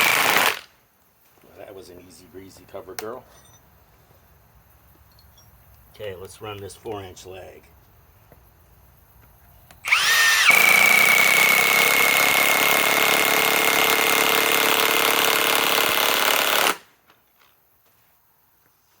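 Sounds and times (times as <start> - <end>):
impact wrench hammering with whine: 0.0 - 0.7, 9.7 - 16.9.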